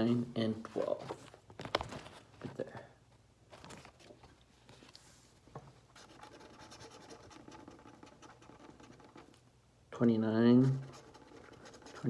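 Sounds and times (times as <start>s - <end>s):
scratching lottery ticket: 6.0s - 9.4s, 10.6s - 12.0s.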